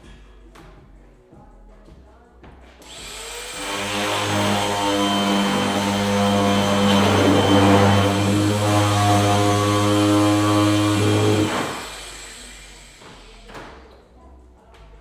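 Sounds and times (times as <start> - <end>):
motorized machine humming: 3.1 - 13.4.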